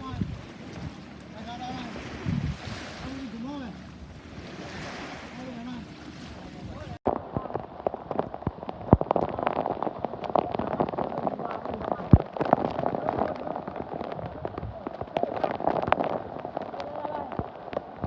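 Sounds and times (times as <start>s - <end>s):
steady rushing noise: 6.6s - 18.0s
irregular crackling and knocking: 7.0s - 18.0s.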